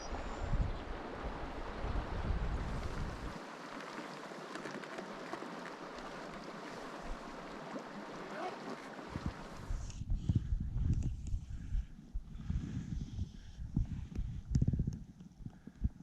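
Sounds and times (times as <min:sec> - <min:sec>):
wind buffeting microphone: 0:00.0 - 0:03.4, 0:09.0 - 0:16.0
river water rushing: 0:00.9 - 0:09.7.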